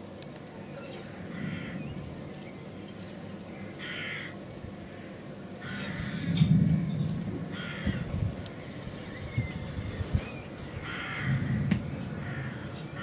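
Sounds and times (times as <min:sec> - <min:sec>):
birds giving harsh calls: 0:03.6 - 0:06.4.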